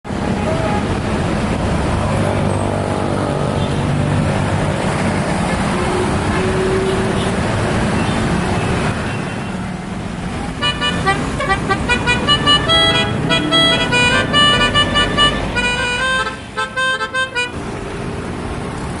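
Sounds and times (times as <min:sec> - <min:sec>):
multi-tone bus horn melody: 0:00.1 - 0:01.1, 0:10.5 - 0:17.8
bus engine running: 0:00.1 - 0:09.1, 0:09.7 - 0:19.0.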